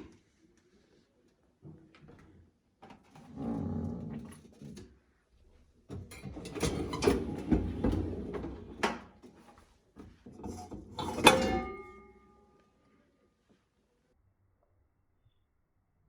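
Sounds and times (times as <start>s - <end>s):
dishes clattering in dishwasher rack: 6.2s - 9.0s, 10.4s - 12.1s.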